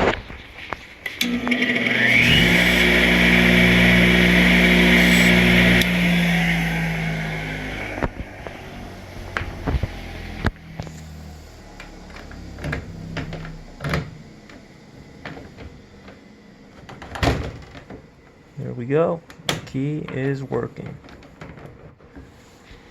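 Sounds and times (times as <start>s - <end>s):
key-cutting machine motor running: 1.2s - 8.1s.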